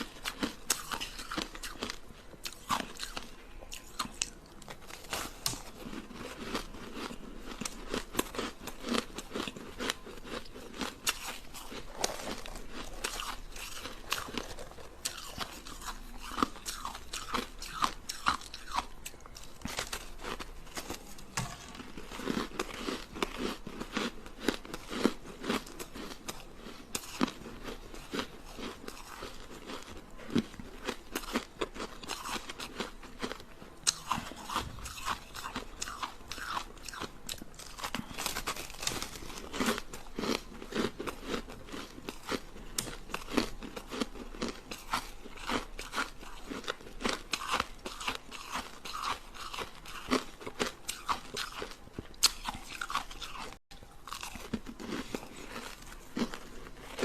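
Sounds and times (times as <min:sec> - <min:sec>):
ice being chewed: 0:00.0 - 0:57.0.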